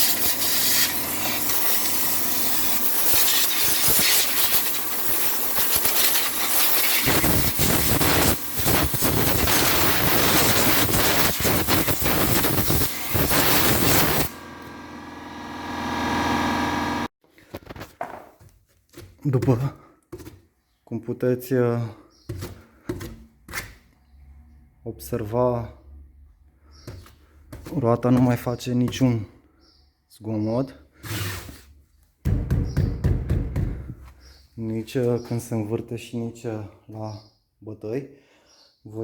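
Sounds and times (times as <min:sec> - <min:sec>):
air blow gun hissing: 0:00.0 - 0:14.4.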